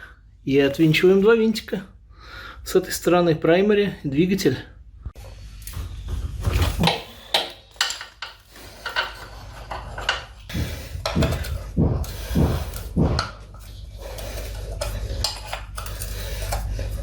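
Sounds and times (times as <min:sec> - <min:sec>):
metal tools clinking and scraping: 0:06.8 - 0:10.4.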